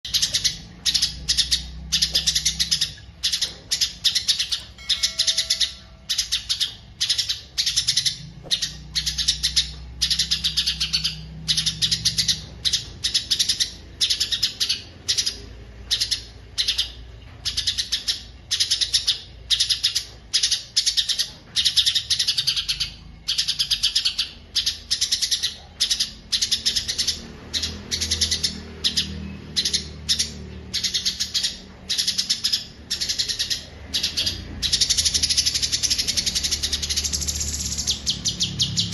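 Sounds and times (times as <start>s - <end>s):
songbird chirping: 0.1s - 38.9s.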